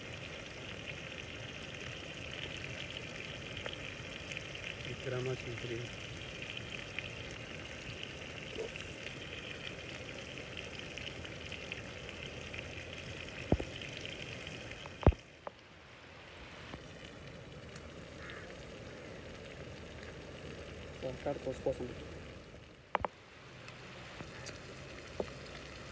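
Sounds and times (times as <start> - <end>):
chicken sizzling on a griddle: 16.5 - 22.2.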